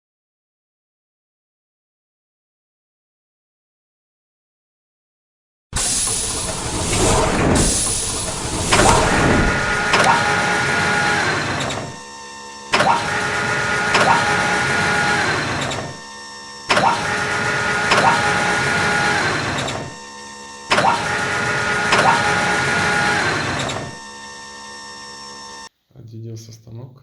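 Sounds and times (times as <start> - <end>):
sharp machine click: 5.8 - 12.0, 12.7 - 16.0, 16.7 - 20.0, 20.7 - 24.2
drilling machine whining: 5.8 - 25.7.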